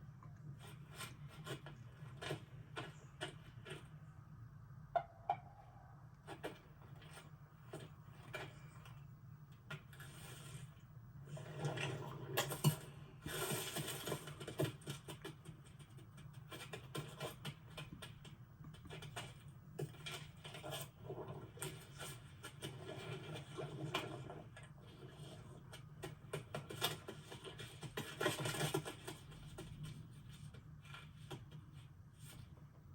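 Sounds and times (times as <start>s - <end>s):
low steady hum: 0.0s - 32.9s
small clicks taps and rustles: 13.8s - 20.8s.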